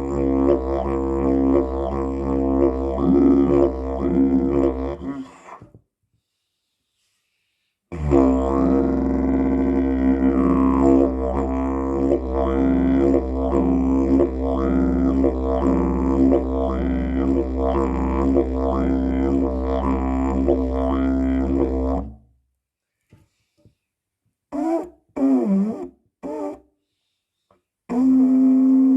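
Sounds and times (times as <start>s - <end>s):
didgeridoo drone: 0.0s - 5.2s, 8.0s - 22.1s.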